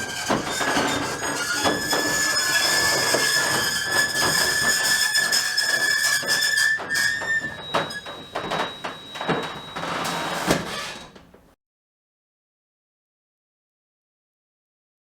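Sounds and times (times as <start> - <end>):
garage door squealing: 0.0 - 11.5.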